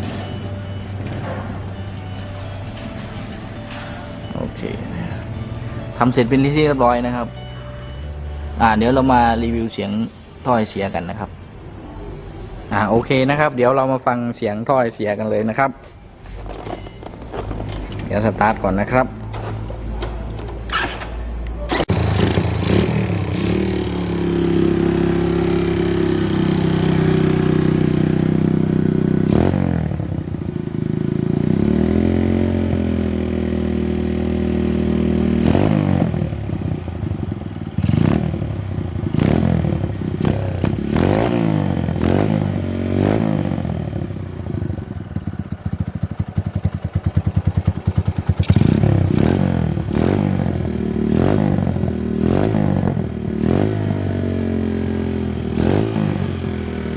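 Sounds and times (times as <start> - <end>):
motorcycle engine revving: 21.9 - 56.9.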